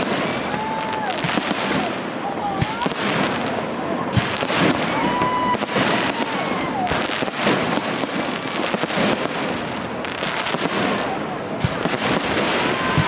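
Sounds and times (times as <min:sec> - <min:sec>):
firework whistling: 0:00.0 - 0:13.0
fireworks bangs and crackling: 0:00.0 - 0:13.0.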